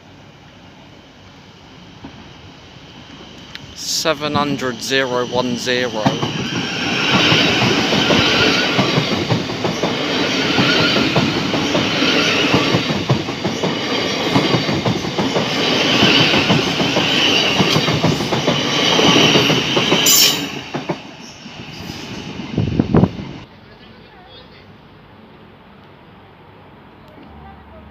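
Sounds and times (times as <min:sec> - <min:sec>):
train wheels clattering over rail joints: 0:06.0 - 0:21.1.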